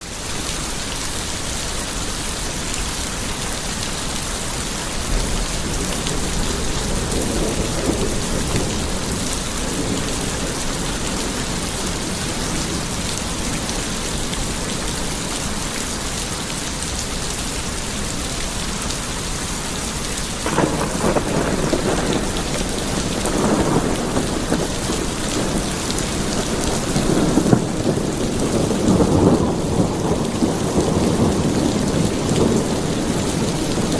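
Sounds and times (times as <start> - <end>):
steady rain falling: 0.0 - 33.9
low rolling thunder: 4.9 - 15.8, 20.4 - 33.9.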